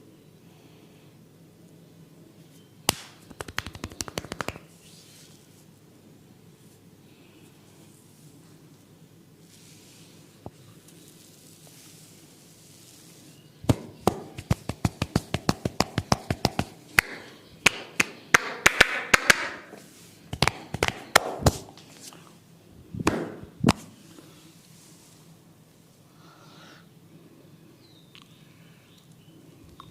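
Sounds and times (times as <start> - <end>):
hands tapping on head: 2.9 - 4.7, 13.6 - 19.7, 20.3 - 21.8, 23.0 - 23.9
hands rubbing head: 2.9 - 5.3, 11.2 - 22.2.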